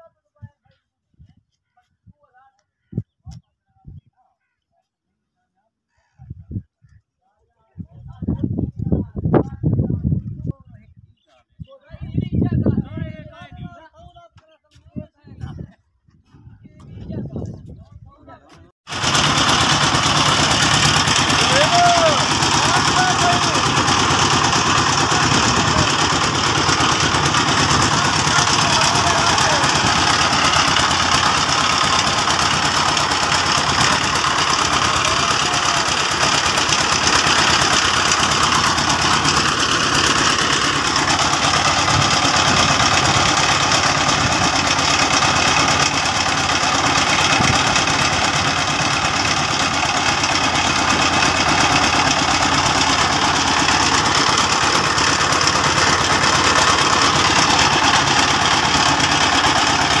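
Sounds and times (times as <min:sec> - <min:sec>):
engine running loudly: 0:18.9 - 1:00.0.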